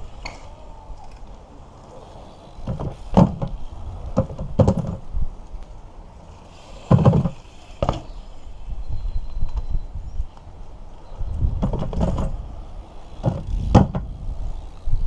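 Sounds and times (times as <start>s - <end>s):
bike knocking and clattering: 2.5s - 5.2s, 6.5s - 8.2s, 11.4s - 15.0s.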